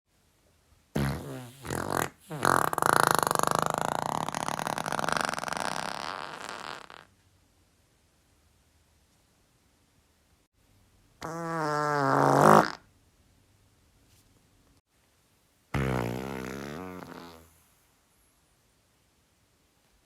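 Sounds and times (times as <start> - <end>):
fart sounds: 0.9 - 7.1, 11.2 - 12.9, 15.7 - 17.6.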